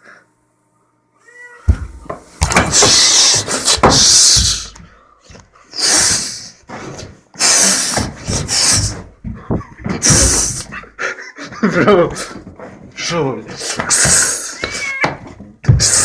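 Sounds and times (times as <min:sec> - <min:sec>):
knocks and bumps: 0:01.7 - 0:05.4, 0:07.9 - 0:10.9.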